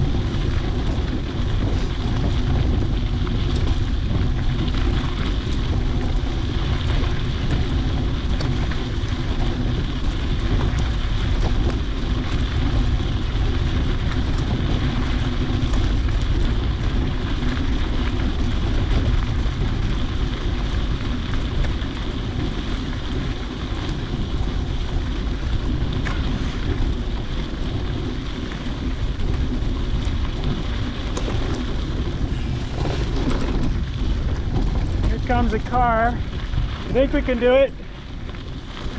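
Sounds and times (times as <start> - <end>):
wind buffeting microphone: 0.0 - 38.9.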